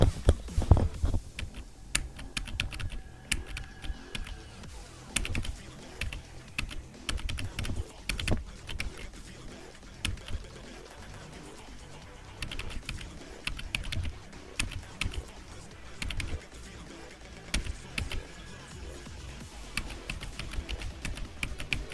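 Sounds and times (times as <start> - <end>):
keyboard keys clicking: 0.0 - 4.4, 5.1 - 9.1, 10.0 - 10.4, 12.4 - 16.5, 17.5 - 18.3, 19.8 - 21.9.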